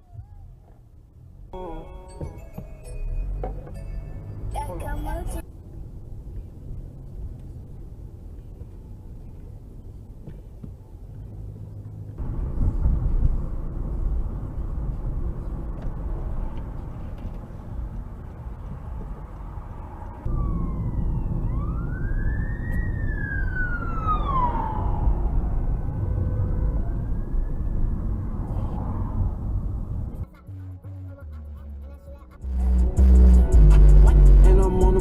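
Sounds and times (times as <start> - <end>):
vehicle road rumble: 0.0 - 35.0
emergency vehicle siren wailing: 19.8 - 29.5.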